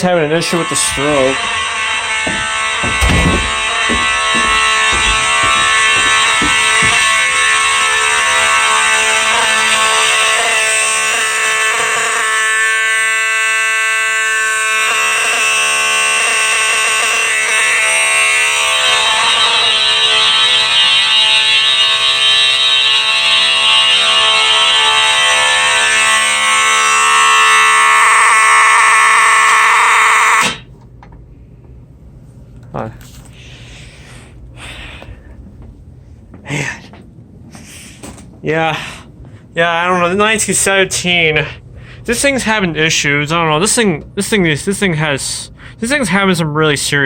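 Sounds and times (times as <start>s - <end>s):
buzzing fire alarm horn: 0.0s - 30.8s, 39.8s - 45.8s.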